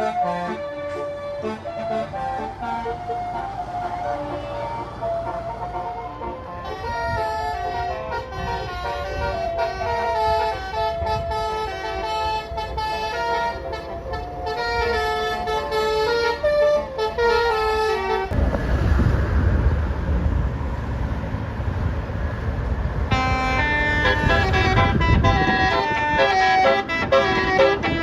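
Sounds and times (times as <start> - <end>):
musical air horn: 0.0 - 4.4, 5.3 - 18.4, 23.1 - 28.0
loud low rumbling: 0.0 - 28.0.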